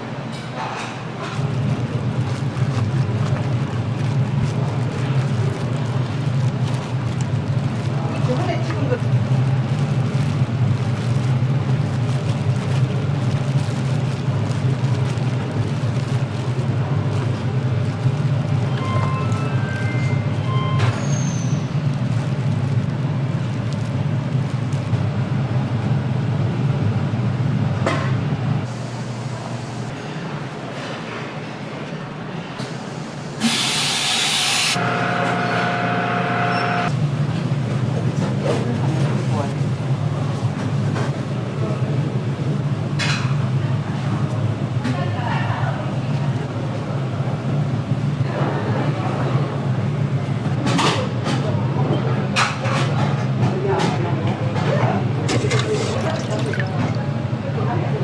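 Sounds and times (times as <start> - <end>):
low mechanical hum: 0.0 - 58.0
loud hiss of spray or steam: 33.4 - 34.8.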